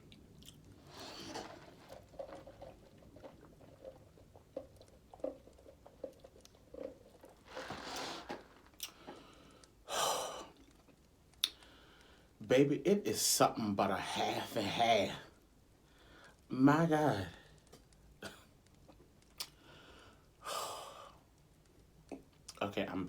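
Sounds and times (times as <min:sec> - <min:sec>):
person chewing food: 0:00.0 - 0:09.8, 0:10.4 - 0:12.2, 0:17.6 - 0:20.4
wet mouth clicks: 0:10.5 - 0:11.7, 0:19.2 - 0:19.6.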